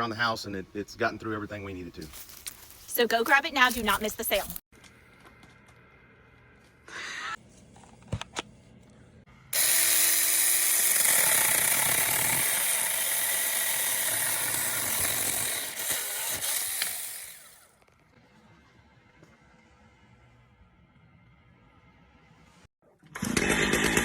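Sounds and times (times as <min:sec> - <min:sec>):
small power tool running: 0:09.5 - 0:17.8, 0:23.2 - 0:24.0.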